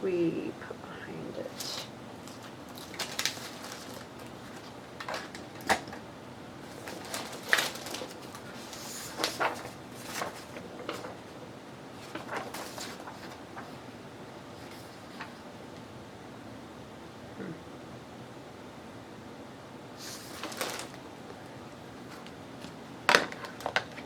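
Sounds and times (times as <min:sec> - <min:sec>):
paper handled on a table: 0:06.6 - 0:11.4, 0:12.0 - 0:13.9, 0:20.0 - 0:21.0.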